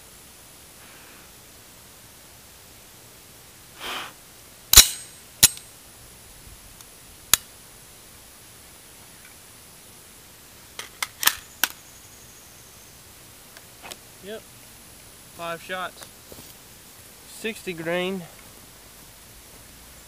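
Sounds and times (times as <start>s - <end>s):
rifle shots: 4.7s - 5.6s
small sharp cracks: 4.7s - 5.7s, 10.8s - 11.8s.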